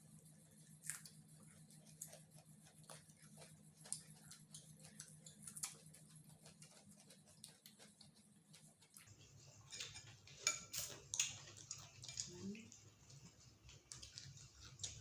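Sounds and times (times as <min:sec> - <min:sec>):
chewing and mouth noises: 0:00.0 - 0:15.0
faint low hum: 0:00.0 - 0:15.0.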